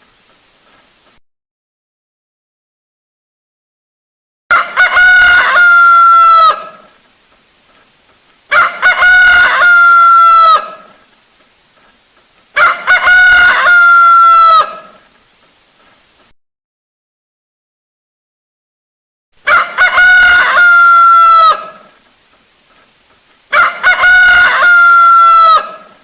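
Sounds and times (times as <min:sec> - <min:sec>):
rooster crowing: 0:04.5 - 0:07.0, 0:08.5 - 0:11.0, 0:12.6 - 0:15.0, 0:19.4 - 0:22.0, 0:23.5 - 0:26.0.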